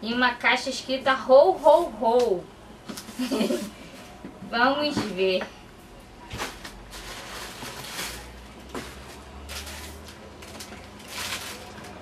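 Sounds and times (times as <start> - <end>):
packaging rustling: 6.4 - 12.0.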